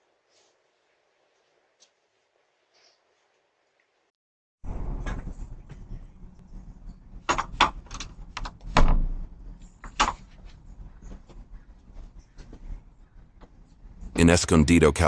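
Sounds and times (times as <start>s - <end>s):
sharp knocks and clatters: 7.2s - 10.5s.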